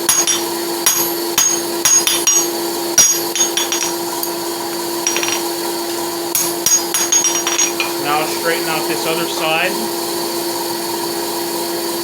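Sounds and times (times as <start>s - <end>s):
hammer striking horseshoe on anvil: 0.0s - 4.4s, 5.0s - 8.8s
forge blower humming: 0.0s - 12.0s.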